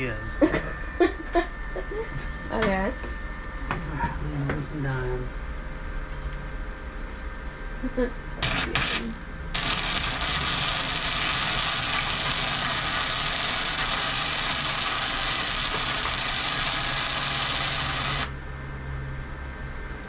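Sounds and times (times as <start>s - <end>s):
low hum: 0.0s - 20.0s
welding arc crackling: 8.4s - 18.5s.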